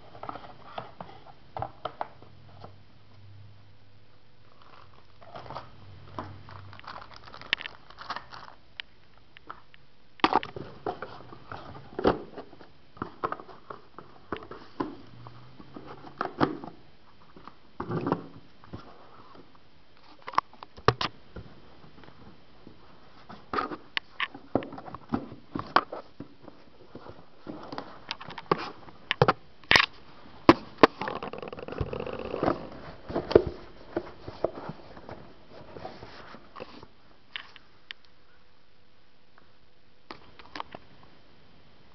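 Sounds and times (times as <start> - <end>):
packaging crinkling: 6.4 - 8.6.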